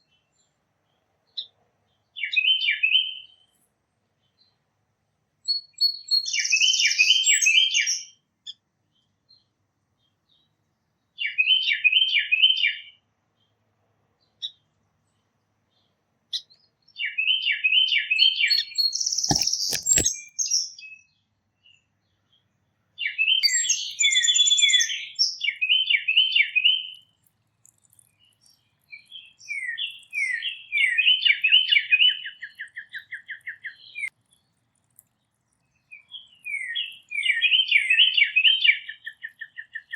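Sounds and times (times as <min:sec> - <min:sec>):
songbird singing with trill: 0:00.0 - 0:03.5, 0:05.4 - 0:13.6, 0:14.2 - 0:39.9.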